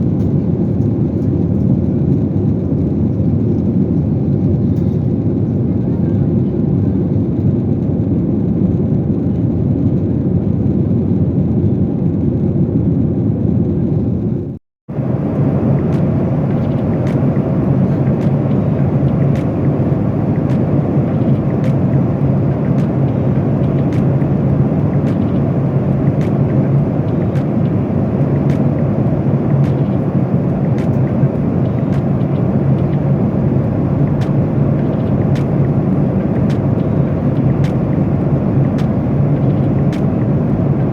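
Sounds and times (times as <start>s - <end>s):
airliner cabin engine noise: 0.0s - 40.9s.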